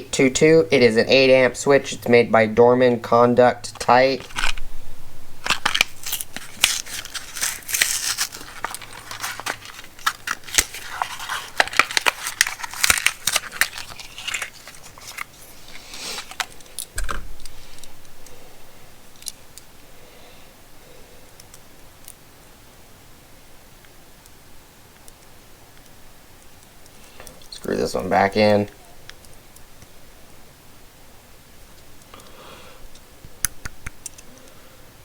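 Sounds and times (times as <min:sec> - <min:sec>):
packaging crinkling and tearing: 0:04.1 - 0:04.6, 0:05.4 - 0:17.9.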